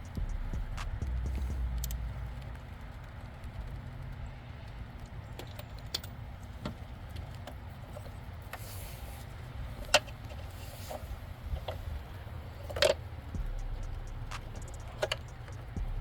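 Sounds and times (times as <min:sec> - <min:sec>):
low steady rumble: 0:00.0 - 0:04.8, 0:10.9 - 0:16.0.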